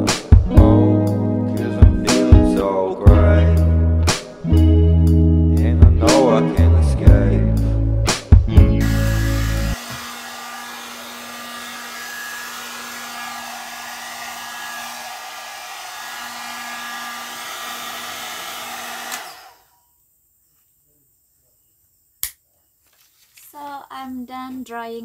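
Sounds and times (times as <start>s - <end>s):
hair dryer blowing air: 8.8s - 19.7s.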